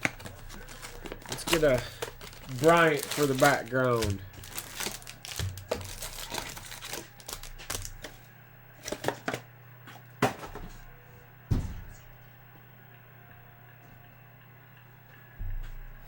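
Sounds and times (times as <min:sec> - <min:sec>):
cards clicking and rustling: 0:00.0 - 0:08.2, 0:08.8 - 0:09.5.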